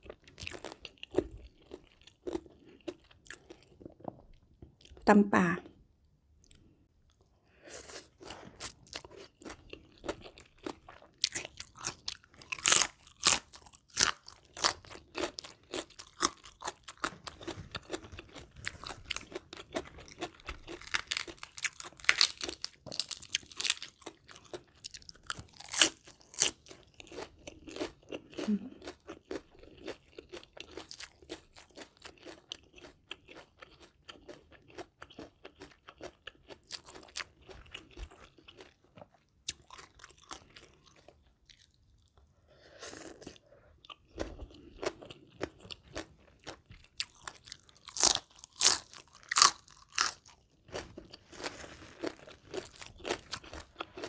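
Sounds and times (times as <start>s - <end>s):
person chewing crispy fried chicken: 0.0s - 5.0s, 6.4s - 54.0s.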